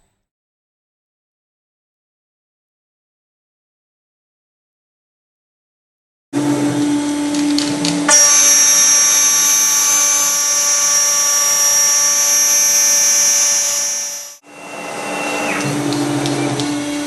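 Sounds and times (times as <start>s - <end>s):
router spindle whining: 8.1s - 15.7s.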